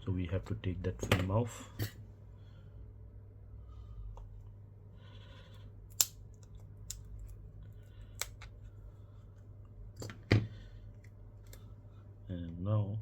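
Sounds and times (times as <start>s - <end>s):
small tools clicking on phone parts: 5.9s - 7.4s, 8.1s - 8.6s.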